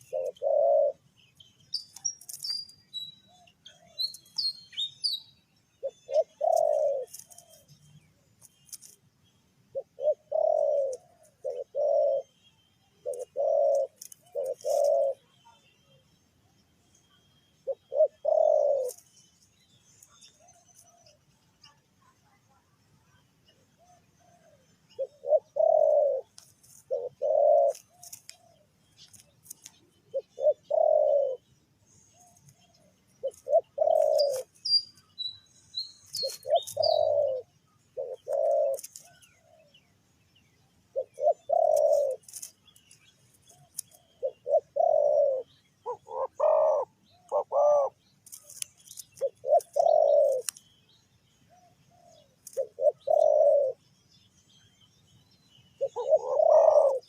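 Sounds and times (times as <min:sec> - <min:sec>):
doves cooing: 0:00.0 - 0:01.1, 0:05.8 - 0:07.7, 0:09.7 - 0:12.3, 0:13.0 - 0:15.3, 0:17.6 - 0:19.0, 0:23.7 - 0:31.4, 0:32.0 - 0:34.8, 0:36.1 - 0:39.8, 0:40.9 - 0:42.9, 0:43.5 - 0:50.5, 0:51.5 - 0:53.8, 0:55.8 - 0:57.0
small bird chirping: 0:00.0 - 0:57.0.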